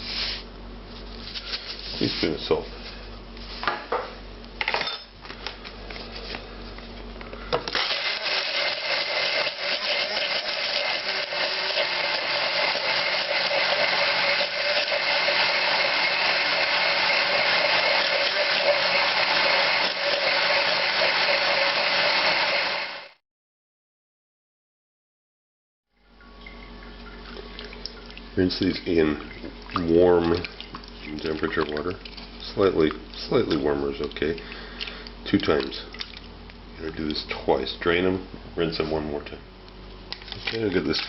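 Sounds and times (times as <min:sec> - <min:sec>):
blender running: 0:07.6 - 0:23.2.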